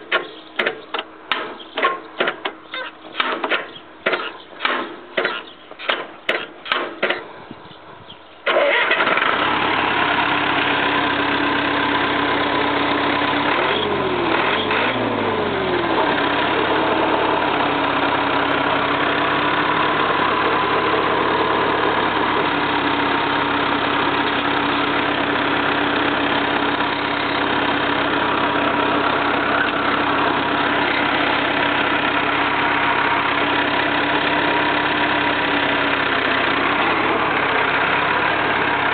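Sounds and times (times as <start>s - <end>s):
diesel engine cranking and running: 0.0s - 38.9s
engine revving: 8.5s - 38.9s.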